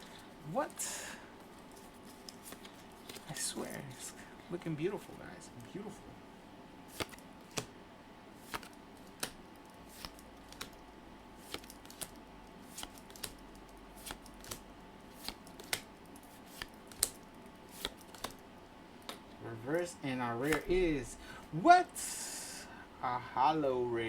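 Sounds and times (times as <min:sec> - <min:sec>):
trading cards clicking: 0:07.0 - 0:07.7, 0:08.5 - 0:09.4, 0:10.0 - 0:10.8, 0:11.4 - 0:12.2, 0:12.8 - 0:14.6, 0:15.2 - 0:18.4, 0:20.4 - 0:20.8.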